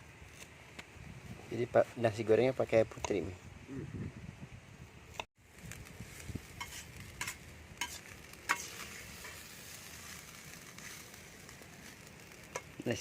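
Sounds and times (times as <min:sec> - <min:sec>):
food sizzling in frying pan: 0:05.3 - 0:13.0.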